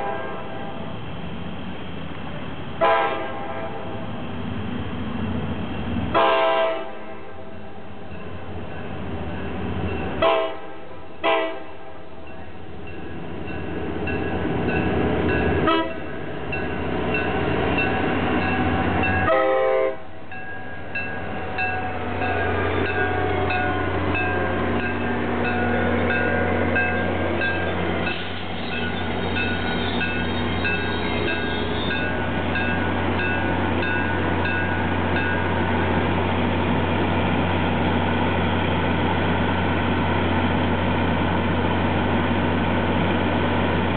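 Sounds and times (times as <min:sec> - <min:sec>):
locomotive air horn blasts: 0:00.0 - 0:00.8, 0:02.8 - 0:03.9, 0:06.2 - 0:07.4, 0:10.2 - 0:12.0, 0:15.6 - 0:16.1, 0:19.2 - 0:20.1, 0:28.6 - 0:32.2
crossing bell ringing: 0:07.7 - 0:10.3, 0:11.7 - 0:19.7, 0:20.3 - 0:36.0.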